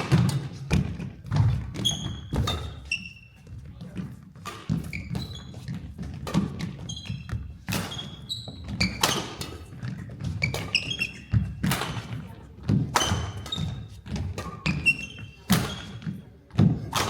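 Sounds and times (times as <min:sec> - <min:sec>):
shoes squeaking on court: 0:00.3 - 0:12.2, 0:13.0 - 0:16.4
racket hitting shuttlecock: 0:04.4 - 0:09.9, 0:10.5 - 0:17.0.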